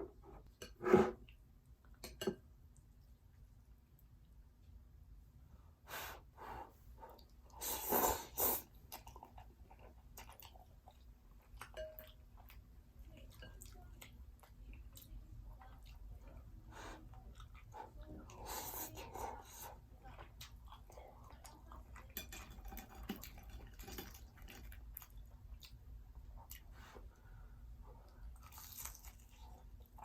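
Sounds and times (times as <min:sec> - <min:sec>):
chewing with wet clicks: 0:08.7 - 0:18.6, 0:20.0 - 0:27.0, 0:28.1 - 0:30.0.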